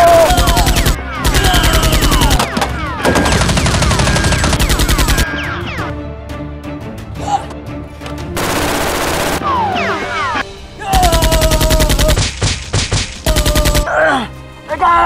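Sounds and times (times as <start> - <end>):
background music: 0.0 - 15.0
automatic gunfire: 3.1 - 5.2, 8.4 - 9.5, 11.0 - 13.8.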